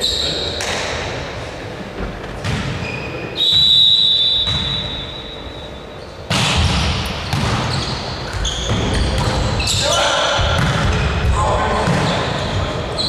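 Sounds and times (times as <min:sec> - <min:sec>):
ball bouncing on court floor: 0:02.0 - 0:03.0, 0:04.4 - 0:04.8, 0:06.3 - 0:09.7, 0:10.3 - 0:12.3
whistle blast: 0:03.4 - 0:06.0.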